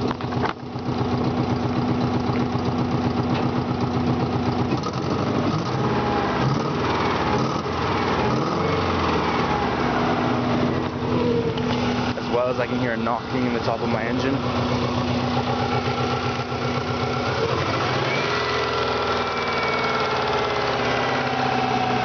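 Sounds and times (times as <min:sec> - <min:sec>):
car engine idling roughly: 0:00.0 - 0:22.0.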